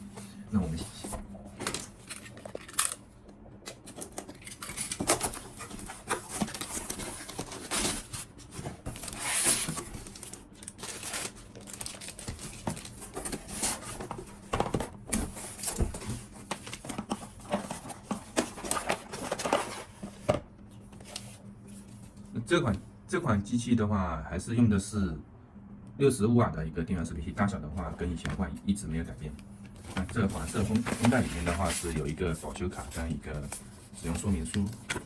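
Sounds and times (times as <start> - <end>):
cardboard and plastic crinkling: 3.6 - 20.4, 29.8 - 35.0.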